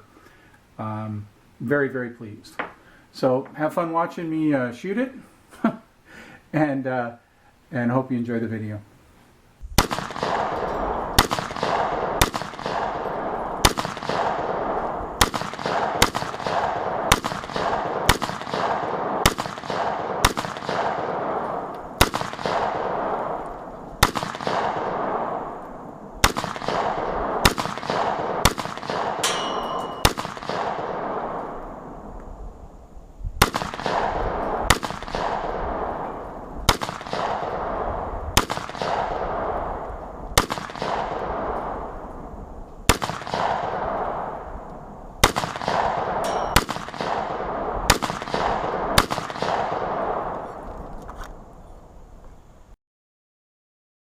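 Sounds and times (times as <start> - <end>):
rifle shots with echo: 9.8 - 32.1, 33.4 - 42.3, 42.9 - 50.6.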